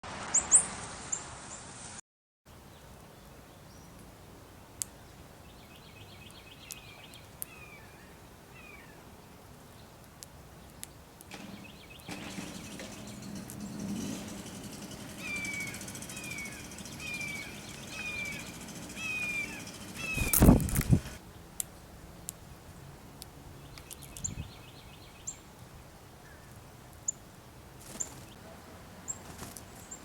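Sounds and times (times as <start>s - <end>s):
faint outdoor hiss: 0.7s - 30.0s
small birds chirping: 2.6s - 21.4s, 23.5s - 25.5s, 26.2s - 28.4s, 29.0s - 30.0s.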